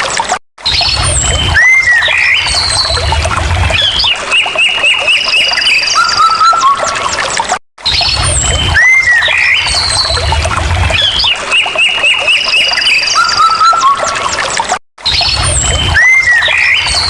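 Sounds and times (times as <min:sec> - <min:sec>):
songbirds singing: 0:01.6 - 0:06.8, 0:08.8 - 0:13.8.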